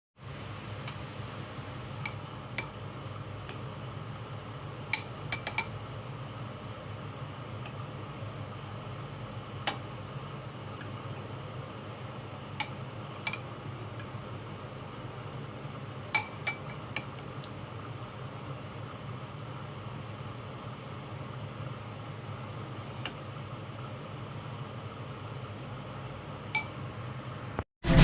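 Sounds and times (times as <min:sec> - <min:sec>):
steady low hum: 0:00.2 - 0:28.0
dishes and utensils clinking: 0:12.6 - 0:14.1, 0:16.2 - 0:17.3.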